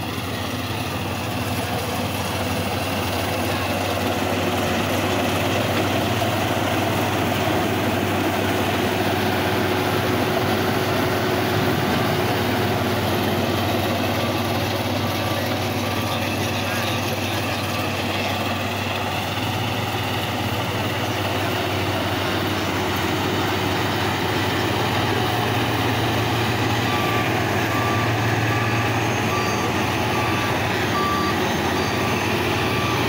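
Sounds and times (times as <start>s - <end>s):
combine harvester running: 0.0s - 33.0s.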